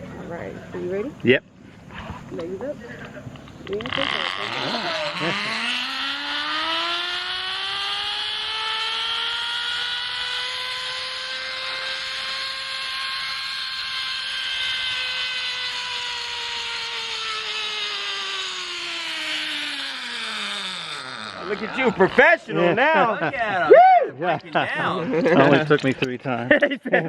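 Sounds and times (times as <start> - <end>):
zip-line pulleys whining: 3.4 - 24.2.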